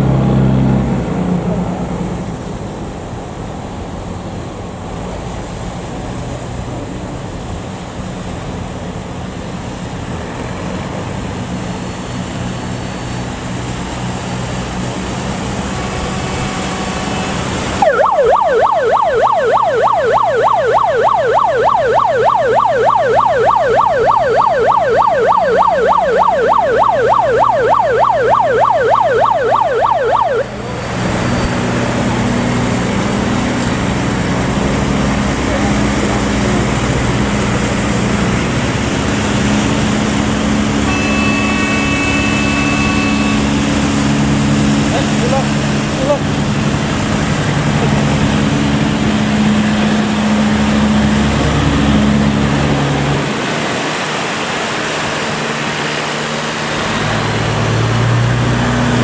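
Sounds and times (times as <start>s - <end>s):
boat engine running: 0.0s - 59.0s
electronic yelp siren warbling: 17.8s - 31.3s, 40.8s - 46.2s.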